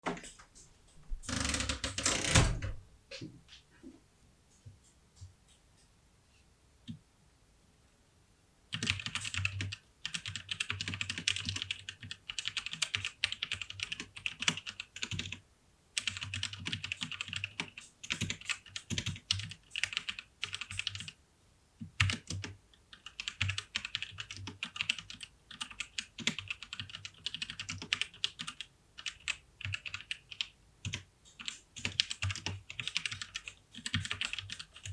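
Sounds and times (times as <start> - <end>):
mechanical keyboard typing: 8.7 - 15.4, 16.0 - 21.2, 21.8 - 34.9.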